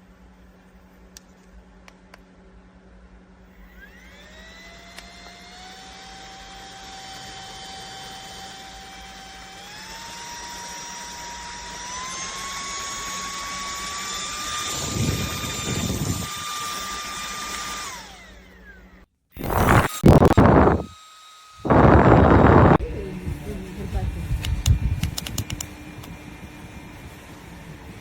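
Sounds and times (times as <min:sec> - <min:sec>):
fan motor whining: 0:03.6 - 0:28.0
air gusts buffeting microphone: 0:14.7 - 0:16.4, 0:19.4 - 0:20.9, 0:21.6 - 0:25.6.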